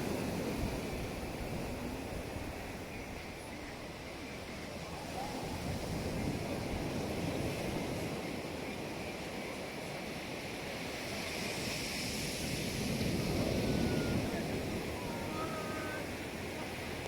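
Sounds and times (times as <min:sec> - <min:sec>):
wind buffeting microphone: 0:00.0 - 0:09.5, 0:10.2 - 0:17.0
surf washing onto beach: 0:00.0 - 0:17.0.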